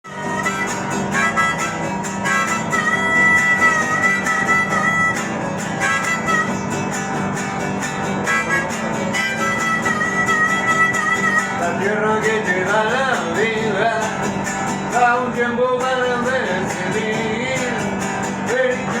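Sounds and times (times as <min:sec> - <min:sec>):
song with beat and guitar: 0:00.0 - 0:19.0
person singing: 0:14.9 - 0:19.0.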